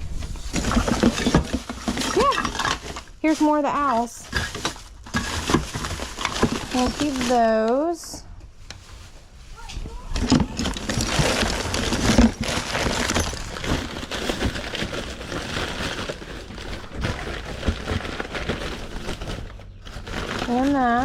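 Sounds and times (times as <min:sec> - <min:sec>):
packing paper rustling: 0:08.8 - 0:21.0
ornaments clicking and knocking: 0:10.2 - 0:14.5.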